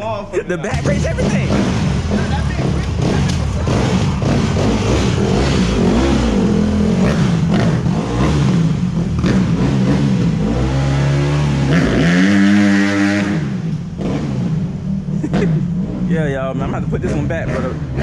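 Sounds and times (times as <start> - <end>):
rider talking: 0.0 - 4.7, 15.3 - 18.0
dirt bike engine revving: 0.7 - 18.0.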